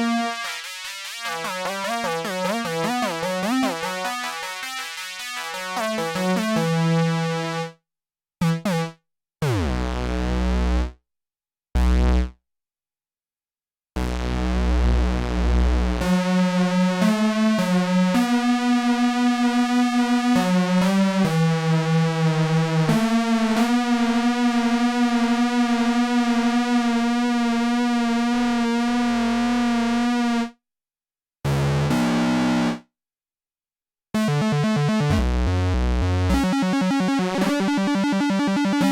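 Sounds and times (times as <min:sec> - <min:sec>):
synthesizer notes: 0:34.2 - 0:38.9.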